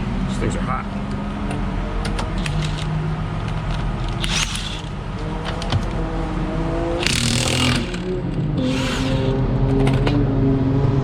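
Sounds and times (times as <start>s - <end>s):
race car engines accelerating: 0.0s - 11.0s
short rasping noises: 7.0s - 9.4s.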